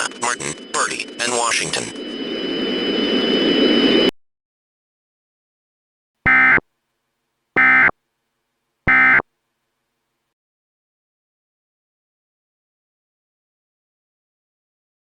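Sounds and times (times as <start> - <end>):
buzzy warbling data bursts: 6.3 - 6.6, 7.6 - 7.9, 8.9 - 9.2.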